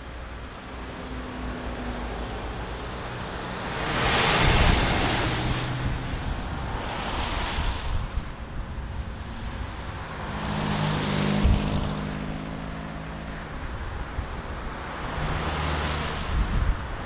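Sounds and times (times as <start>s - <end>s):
steady rushing noise: 0.0s - 17.0s
vehicles passing: 0.0s - 17.0s.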